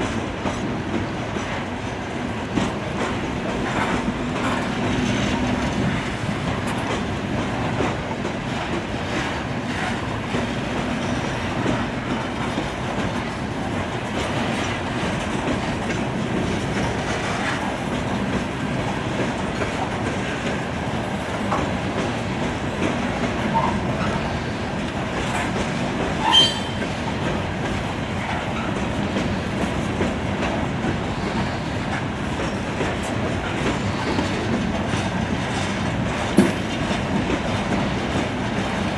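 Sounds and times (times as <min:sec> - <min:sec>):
train rumble and wheel clatter: 0:00.0 - 0:38.9
sharp wheel squeal: 0:26.2 - 0:27.0.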